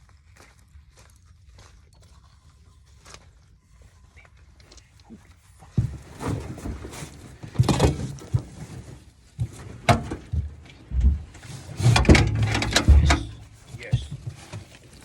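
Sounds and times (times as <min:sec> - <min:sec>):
knocks and thumps: 0:05.7 - 0:14.8
scraping noises: 0:05.7 - 0:15.0.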